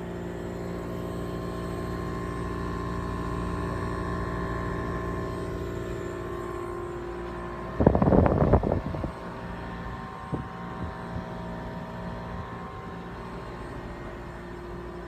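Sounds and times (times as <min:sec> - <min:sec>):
air conditioner humming: 0:00.0 - 0:15.0.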